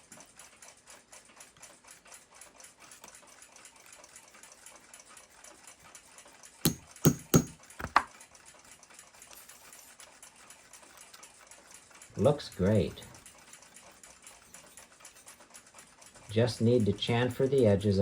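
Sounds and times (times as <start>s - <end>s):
sharp metallic clicks: 6.7s - 7.6s.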